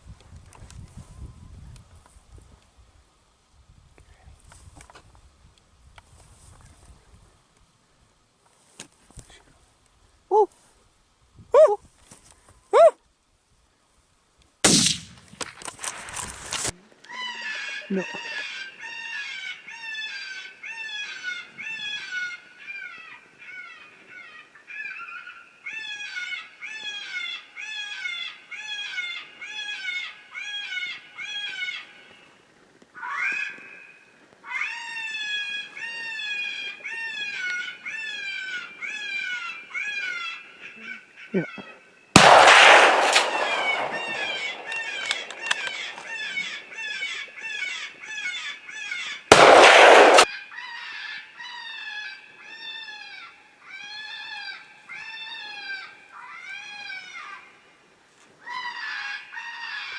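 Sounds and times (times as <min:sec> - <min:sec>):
rifle shot: 0:14.6 - 0:15.2, 0:42.2 - 0:46.5, 0:49.3 - 0:50.3.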